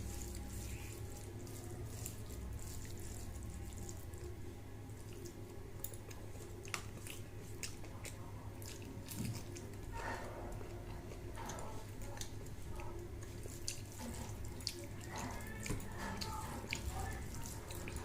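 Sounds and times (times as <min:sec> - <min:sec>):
wet eating clicks and smacks: 0:05.0 - 0:09.8.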